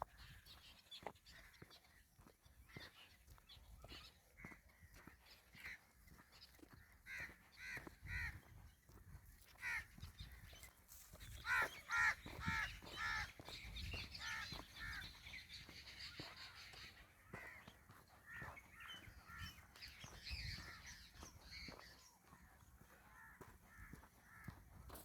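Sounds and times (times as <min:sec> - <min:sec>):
small birds chattering: 0:00.2 - 0:25.0
crows cawing: 0:06.8 - 0:08.4, 0:09.6 - 0:10.0, 0:11.4 - 0:13.4, 0:16.3 - 0:19.6, 0:23.0 - 0:25.0.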